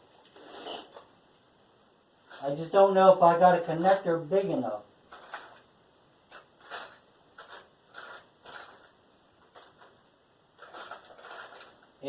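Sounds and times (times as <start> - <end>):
small parts scraping and rustling: 0.2 - 1.2, 2.2 - 2.8, 5.1 - 12.0.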